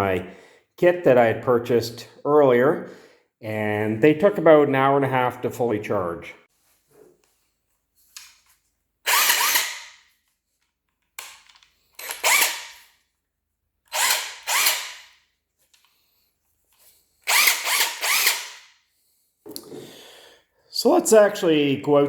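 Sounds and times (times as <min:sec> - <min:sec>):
impact wrench spinning: 0:09.1 - 0:10.0, 0:12.0 - 0:12.9, 0:13.9 - 0:15.2, 0:17.2 - 0:18.8.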